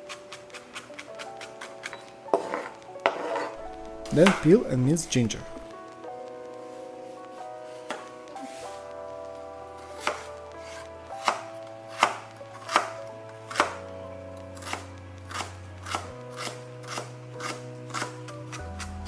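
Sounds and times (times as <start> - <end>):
soft background music: 0.0 - 19.0
knife chopping on cutting board: 3.1 - 4.8, 11.2 - 13.8, 14.6 - 18.8.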